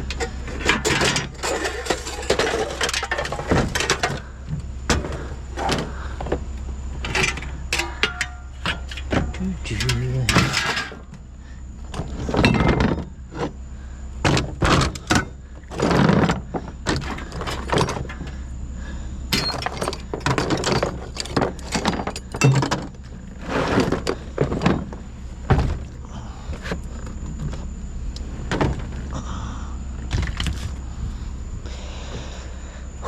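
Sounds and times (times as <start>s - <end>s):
scrap metal clanking onto pile: 0.0s - 4.2s, 7.0s - 11.1s, 12.3s - 13.2s, 19.3s - 22.9s.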